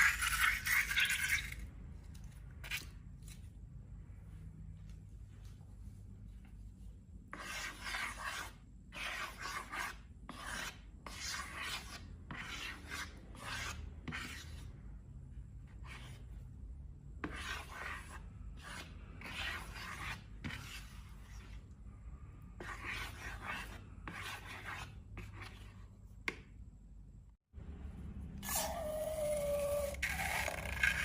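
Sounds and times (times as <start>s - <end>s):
scratchy rubbing strokes: 7.3s - 14.7s, 17.2s - 21.8s.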